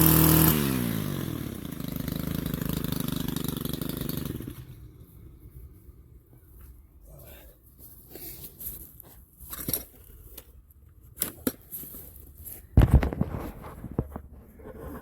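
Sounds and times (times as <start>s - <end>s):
thumps and cracks: 12.7s - 14.8s.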